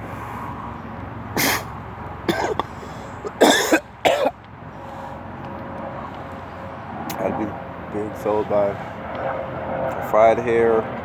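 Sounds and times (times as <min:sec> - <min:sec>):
man coughing: 0:01.4 - 0:01.7, 0:02.3 - 0:04.4.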